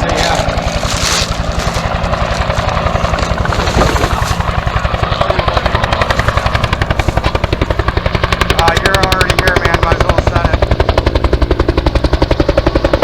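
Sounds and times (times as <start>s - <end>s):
helicopter rotor beating: 0.0s - 13.0s.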